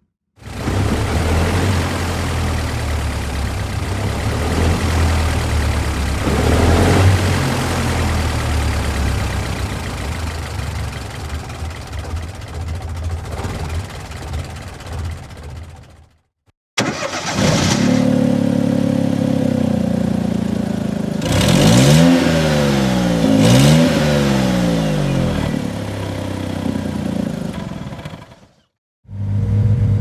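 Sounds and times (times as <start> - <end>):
car engine idling: 0.4 - 16.2.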